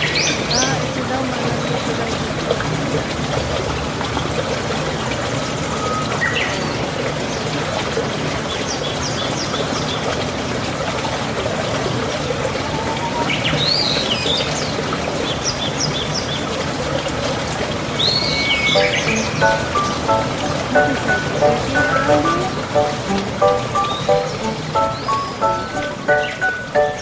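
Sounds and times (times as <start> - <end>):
running water rushing: 0.0 - 27.0
small birds chirping: 18.0 - 27.0.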